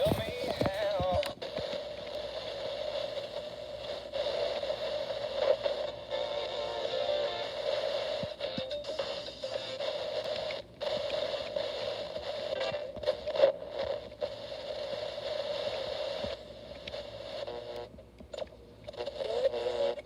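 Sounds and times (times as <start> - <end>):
tuner clicks: 0.0 - 5.9, 9.9 - 19.1
radio static hiss: 0.0 - 20.0.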